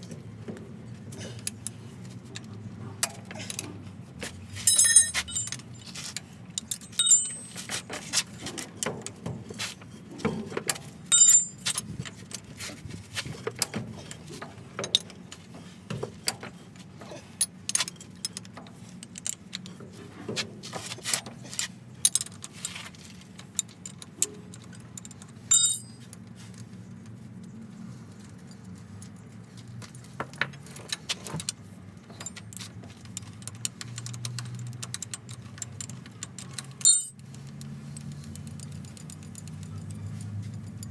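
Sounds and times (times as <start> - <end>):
metal tools clinking on steel: 4.6 - 8.6, 11.1 - 12.0, 23.5 - 26.1, 35.0 - 37.2.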